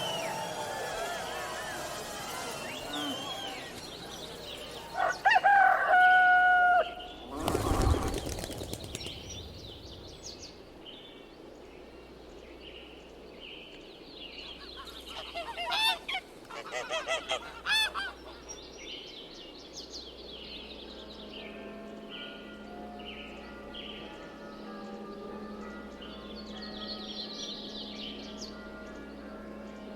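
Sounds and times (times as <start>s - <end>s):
small birds chirping: 0.0s - 5.5s, 6.8s - 29.8s
rooster crowing: 0.0s - 7.2s
geese honking: 0.0s - 8.8s, 14.7s - 18.5s.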